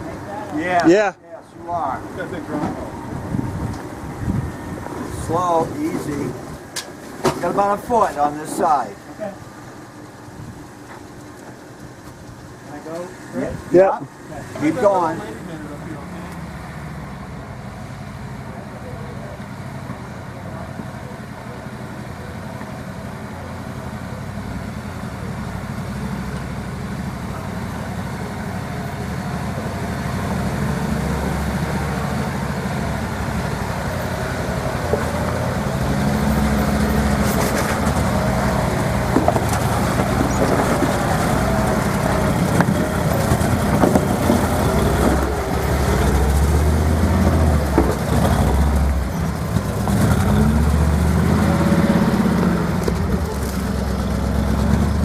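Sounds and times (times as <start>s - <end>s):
off-road vehicle engine crawling: 0.0s - 55.0s.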